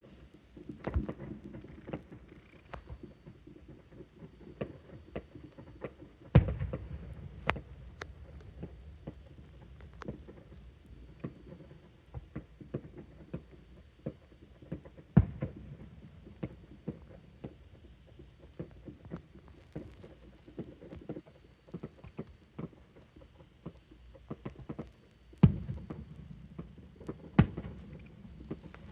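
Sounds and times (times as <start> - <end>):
distant firework pops and crackles: 0.0 - 28.9
loud firework booms: 6.4 - 10.6, 25.4 - 28.9.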